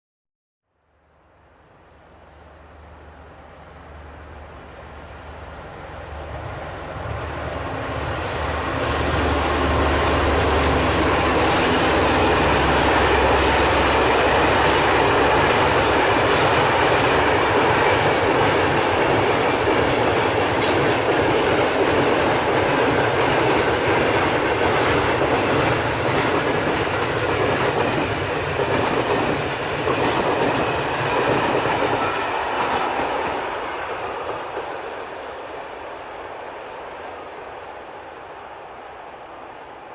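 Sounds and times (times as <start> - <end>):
train wheels clattering on rails: 8.6 - 34.8.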